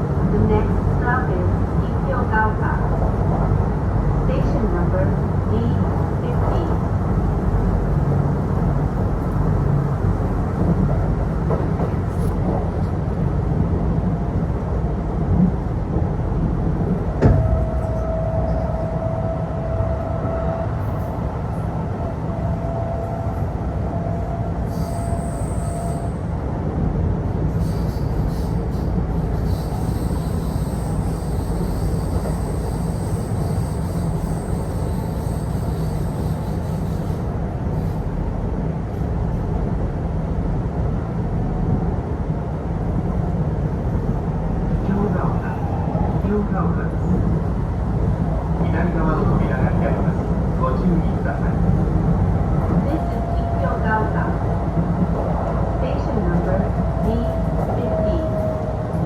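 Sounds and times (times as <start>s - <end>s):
train wheels rumbling: 0.0s - 40.5s.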